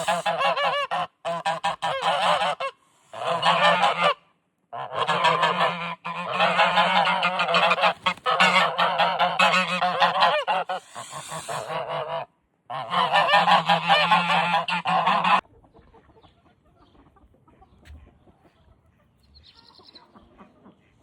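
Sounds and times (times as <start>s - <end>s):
geese honking: 0.0s - 15.4s.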